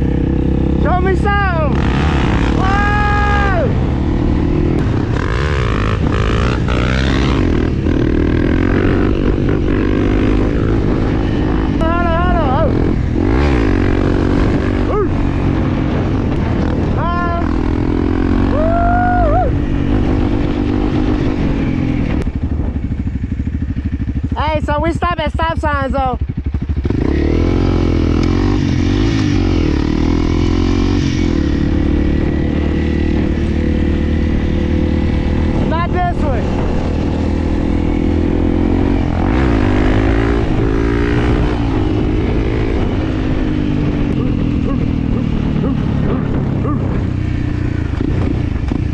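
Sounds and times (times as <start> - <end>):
motorcycle engine revving: 0.0 - 48.9.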